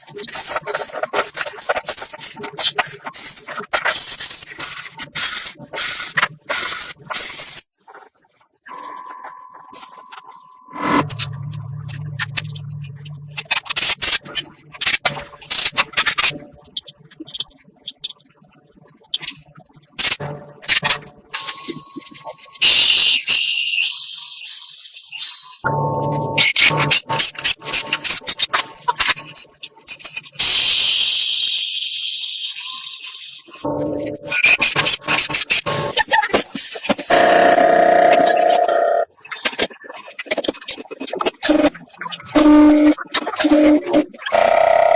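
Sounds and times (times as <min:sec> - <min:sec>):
low hum: 0:08.8 - 0:14.5.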